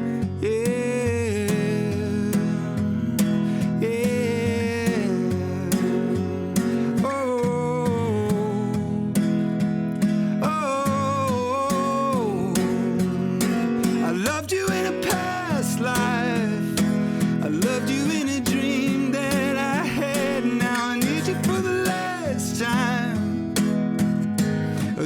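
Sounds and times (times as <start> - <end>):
acoustic guitar strumming: 0.0 - 25.0
wordless singing with vibrato: 0.4 - 25.0.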